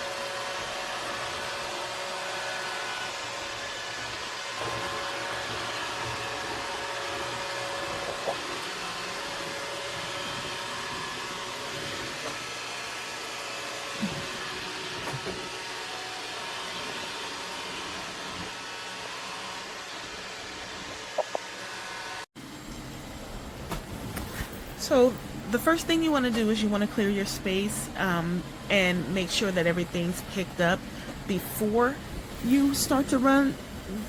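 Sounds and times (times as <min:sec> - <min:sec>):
robot vacuum whirring: 0:00.0 - 0:21.8.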